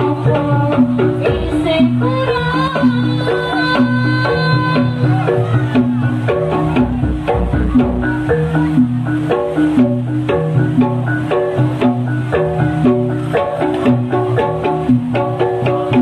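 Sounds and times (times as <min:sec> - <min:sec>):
drums: 0:00.0 - 0:16.0
held melodic line: 0:00.0 - 0:16.0
metal-keyed percussion: 0:00.0 - 0:16.0
low bass: 0:04.5 - 0:16.0.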